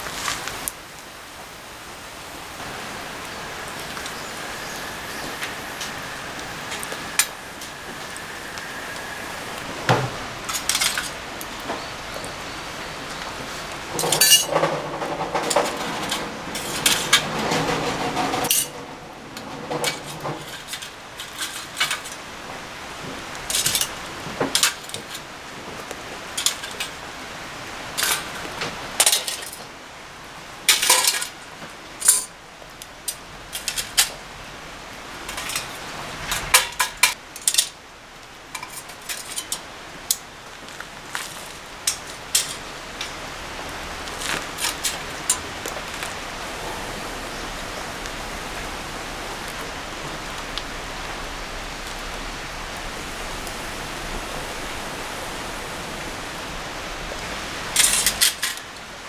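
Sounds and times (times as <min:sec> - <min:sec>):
utensils clinking against dishes: 0:03.6 - 0:22.3, 0:23.4 - 0:25.3, 0:26.3 - 0:27.0, 0:27.9 - 0:29.7, 0:30.7 - 0:31.4, 0:32.0 - 0:32.4, 0:33.0 - 0:34.2, 0:35.1 - 0:37.8, 0:38.6 - 0:40.3, 0:41.2 - 0:43.2, 0:57.7 - 0:58.8.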